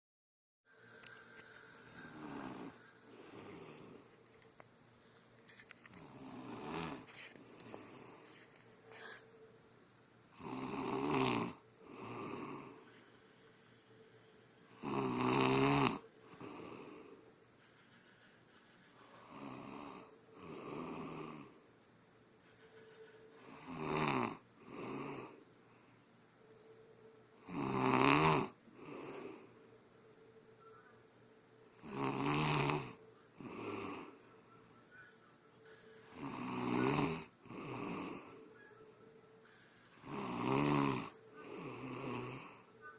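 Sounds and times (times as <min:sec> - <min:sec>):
woman snoring: 0:01.0 - 0:04.1, 0:05.9 - 0:08.4, 0:10.3 - 0:12.9, 0:14.7 - 0:17.2, 0:19.2 - 0:21.6, 0:23.3 - 0:25.4, 0:27.4 - 0:29.6, 0:31.7 - 0:34.2, 0:36.0 - 0:38.5, 0:39.9 - 0:42.9.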